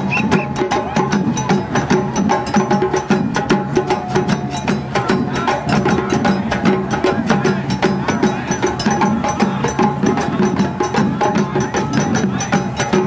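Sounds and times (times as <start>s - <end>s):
fast drum and stick hits: 0.0s - 13.0s.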